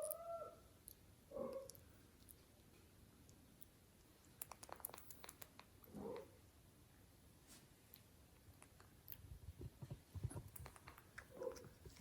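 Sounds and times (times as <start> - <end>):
small pet mouth clicks: 3.6 - 6.0, 7.9 - 9.2, 10.3 - 11.7.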